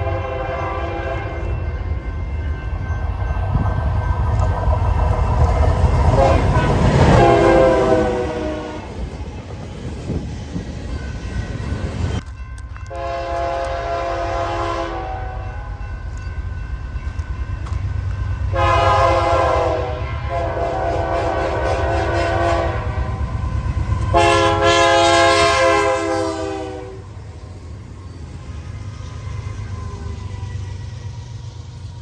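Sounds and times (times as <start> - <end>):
locomotive horn blasts: 0.0 - 1.7, 5.9 - 8.9, 12.8 - 15.9, 18.5 - 23.4, 24.0 - 27.2
train rumbling: 0.0 - 32.0.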